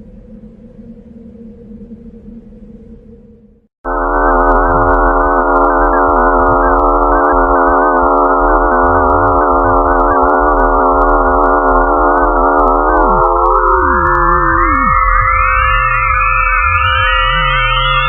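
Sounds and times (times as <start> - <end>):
low rumble: 0.0 - 18.0
steady hum: 0.0 - 18.0
warbling synthesized tones: 3.9 - 18.0.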